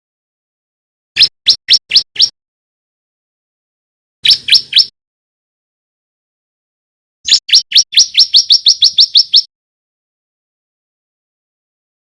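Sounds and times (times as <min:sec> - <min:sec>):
bird chirping: 0:01.2 - 0:02.3, 0:04.2 - 0:04.9, 0:07.3 - 0:09.5.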